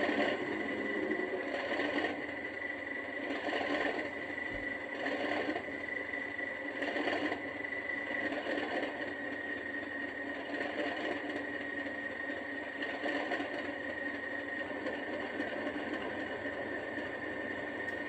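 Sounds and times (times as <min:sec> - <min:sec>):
diesel engine hum from small speaker: 0:14.7 - 0:18.0.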